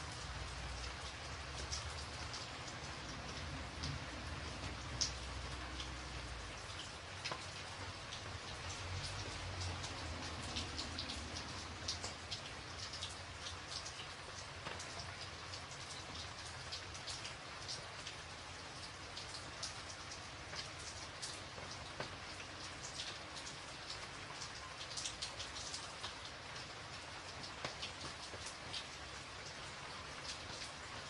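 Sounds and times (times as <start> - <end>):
steady rain hiss: 0.0 - 31.0
raindrop hits: 0.5 - 15.0.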